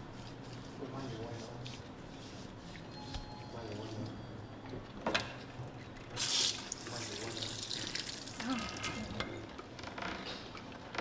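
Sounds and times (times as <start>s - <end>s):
water running and splashing: 6.3s - 8.6s.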